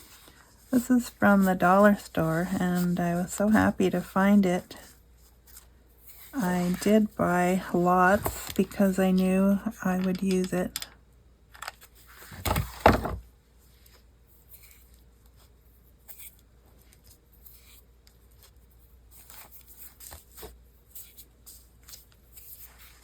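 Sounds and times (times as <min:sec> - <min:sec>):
craft materials rustling: 0:00.0 - 0:10.9.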